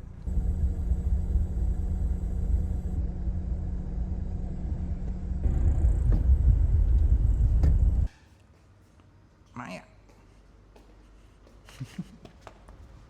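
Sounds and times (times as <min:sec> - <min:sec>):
car cabin road rumble: 0:00.0 - 0:03.0.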